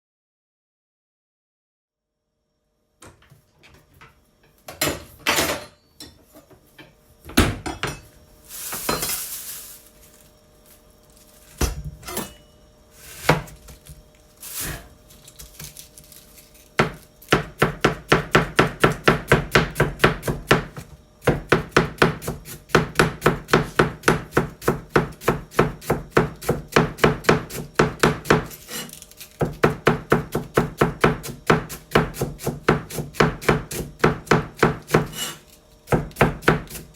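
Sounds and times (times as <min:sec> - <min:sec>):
knife chopping cabbage on board: 0:16.8 - 0:28.8, 0:29.4 - 0:36.9.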